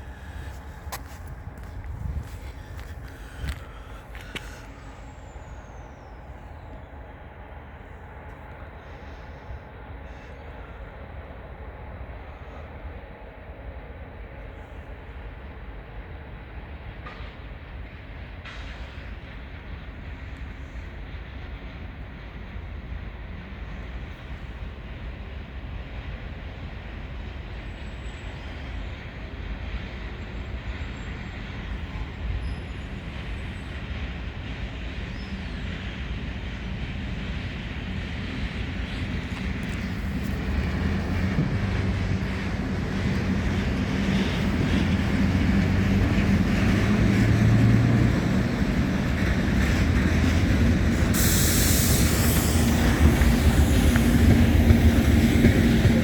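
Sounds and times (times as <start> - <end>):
electric locomotive hum: 0.0 - 56.0
high hiss: 51.1 - 55.2.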